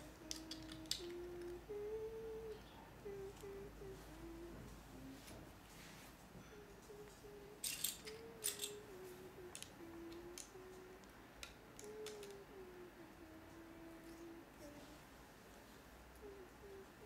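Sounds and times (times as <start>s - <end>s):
child humming: 0.0s - 5.5s, 6.4s - 15.1s, 16.2s - 17.0s
plastic bricks clicking and rattling: 0.3s - 1.2s, 11.4s - 12.4s.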